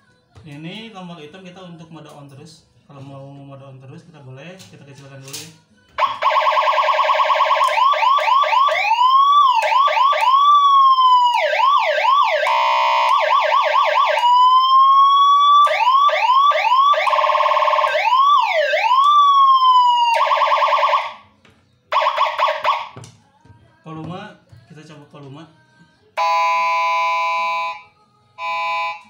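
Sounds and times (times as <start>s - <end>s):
electronic siren patterns: 6.0s - 21.3s, 21.9s - 23.0s, 26.2s - 29.0s.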